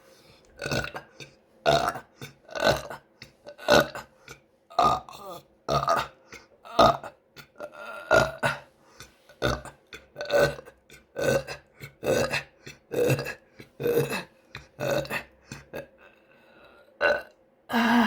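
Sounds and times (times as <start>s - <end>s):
woman burping: 0.6s - 4.1s, 4.7s - 8.7s, 9.4s - 15.9s.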